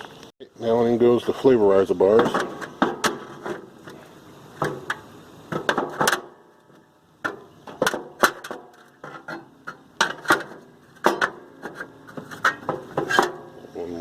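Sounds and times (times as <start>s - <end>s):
light metal scraping: 7.3s - 13.6s.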